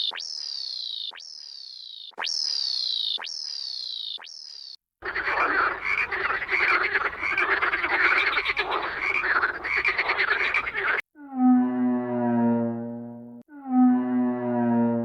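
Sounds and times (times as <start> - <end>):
frogs croaking in chorus: 5.0 - 11.0.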